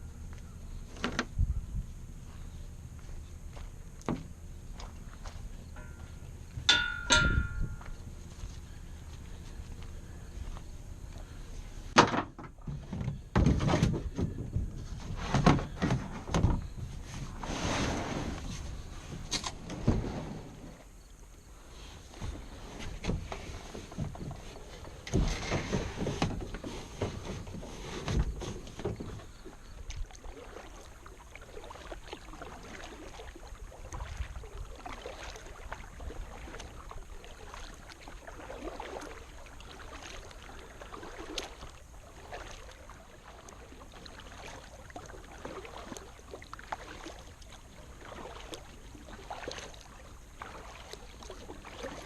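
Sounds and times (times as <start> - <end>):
water dripping: 4.8 - 8.0
kayak paddle splashing water: 21.8 - 52.0.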